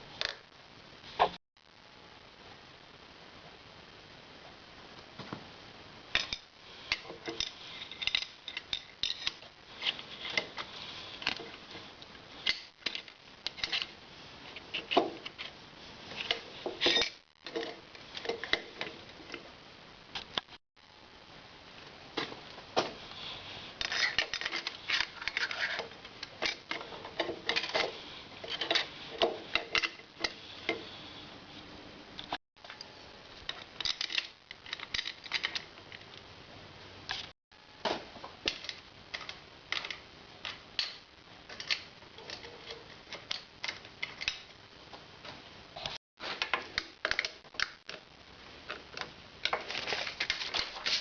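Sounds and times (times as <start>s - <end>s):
metal tools clinking and scraping: 6.1s - 11.6s, 12.4s - 14.0s, 16.2s - 18.6s, 23.8s - 30.4s.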